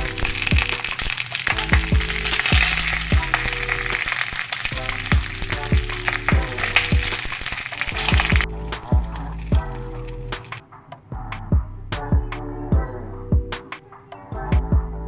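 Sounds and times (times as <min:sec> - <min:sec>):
food sizzling in a pan: 0:00.0 - 0:10.6
background music with drum hits: 0:00.0 - 0:15.0.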